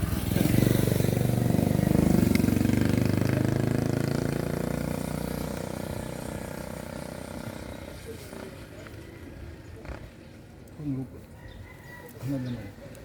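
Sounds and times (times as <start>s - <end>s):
passing vehicle engine: 0.0s - 8.9s.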